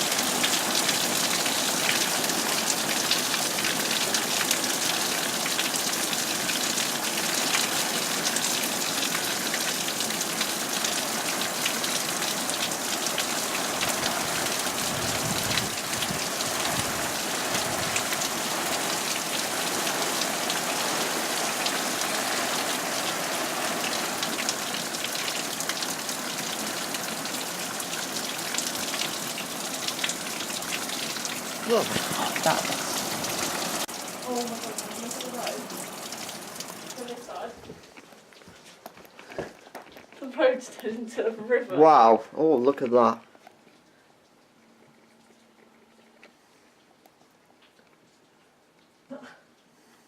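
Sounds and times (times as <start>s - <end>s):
heavy rain pouring: 0.0s - 38.4s.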